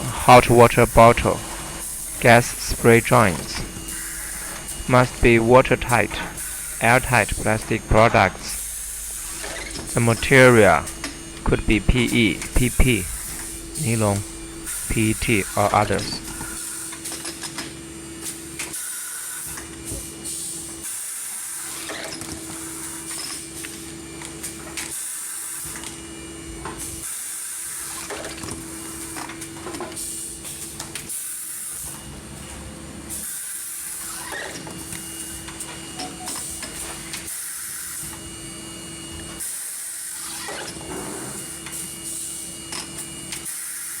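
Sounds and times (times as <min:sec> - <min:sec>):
machine motor hum: 0:00.0 - 0:16.6.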